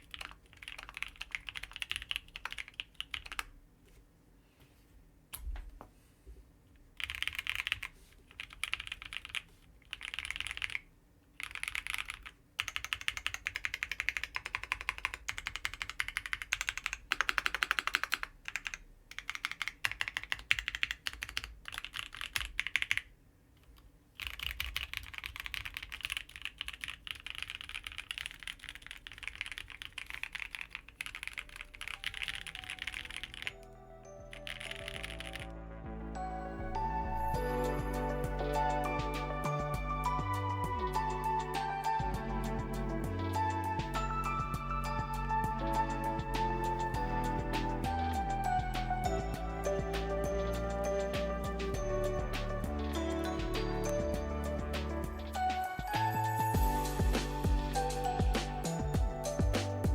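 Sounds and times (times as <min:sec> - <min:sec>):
mechanical keyboard typing: 0:00.0 - 0:03.6, 0:07.0 - 0:33.7, 0:34.3 - 0:35.5.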